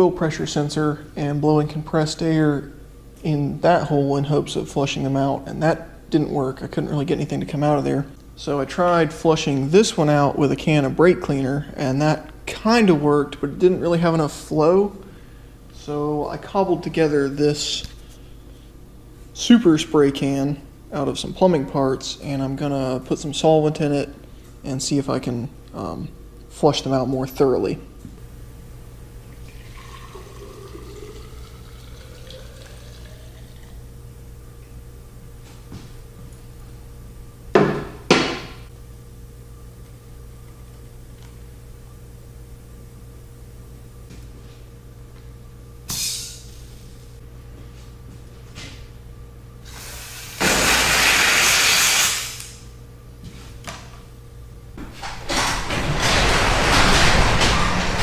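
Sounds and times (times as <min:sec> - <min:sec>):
steady low hum: 0:00.0 - 0:51.1, 0:52.3 - 0:58.0
liquid pouring into a container: 0:29.4 - 0:33.8
short hiss: 0:49.7 - 0:52.6
loud spray from can: 0:49.8 - 0:52.6.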